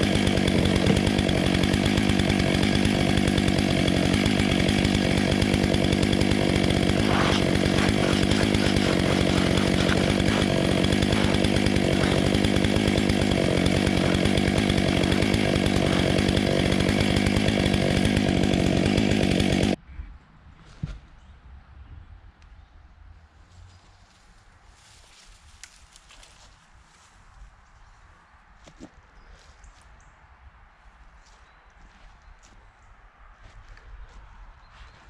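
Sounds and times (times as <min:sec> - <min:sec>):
chainsaw cutting log: 0:00.0 - 0:19.8.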